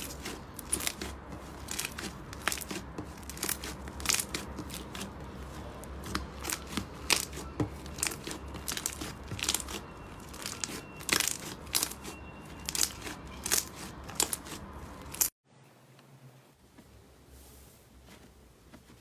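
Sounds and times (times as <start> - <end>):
slime crackling when squeezed: 6.0 - 15.3.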